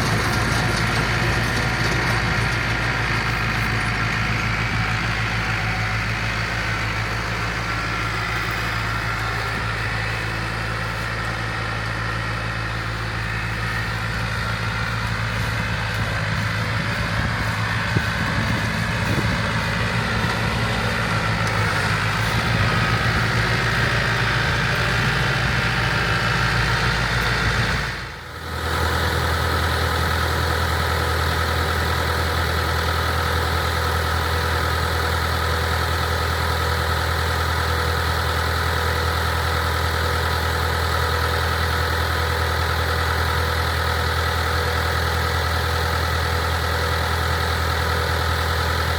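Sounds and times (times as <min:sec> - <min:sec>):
combine machinery hum: 0:00.0 - 0:33.5
tractor engine running: 0:00.0 - 0:48.9.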